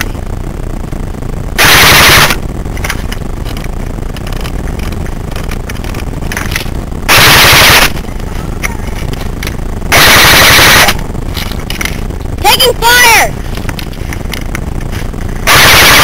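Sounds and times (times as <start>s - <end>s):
airsoft gun full-auto bursts: 1.6s - 2.4s, 9.9s - 11.0s, 15.5s - 16.0s.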